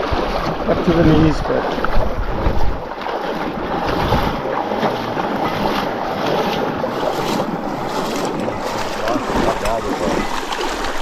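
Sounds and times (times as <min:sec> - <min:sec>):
person wading through water: 0:00.0 - 0:11.0
river rushing: 0:00.0 - 0:11.0.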